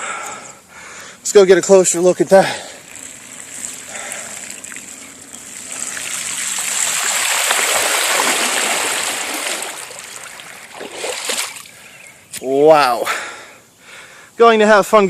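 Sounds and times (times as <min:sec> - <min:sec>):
rushing floodwater: 0:01.4 - 0:11.9.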